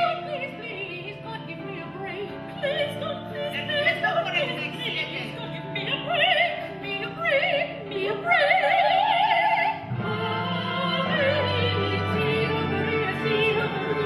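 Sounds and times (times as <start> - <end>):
operatic singing: 0.0 - 14.0
orchestral accompaniment: 9.4 - 14.0.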